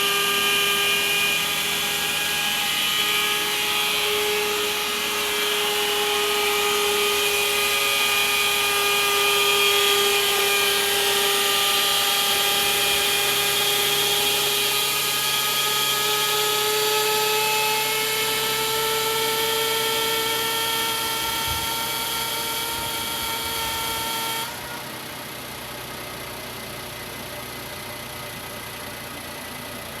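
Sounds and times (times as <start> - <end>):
car whining noise: 0.0 - 30.0.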